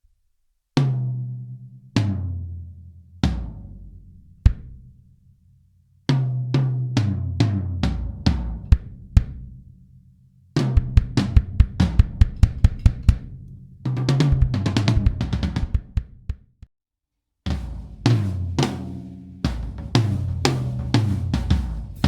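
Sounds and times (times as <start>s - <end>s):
bass drum kicks: 4.4s - 4.9s, 7.8s - 9.6s, 10.7s - 13.4s, 14.1s - 16.6s.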